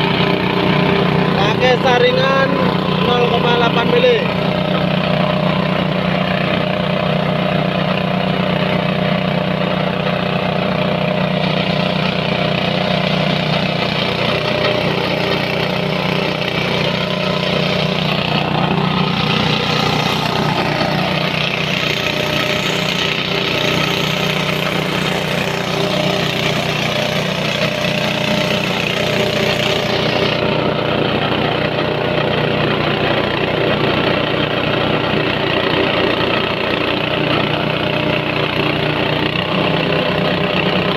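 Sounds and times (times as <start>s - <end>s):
grinding machine humming: 0.0s - 40.9s.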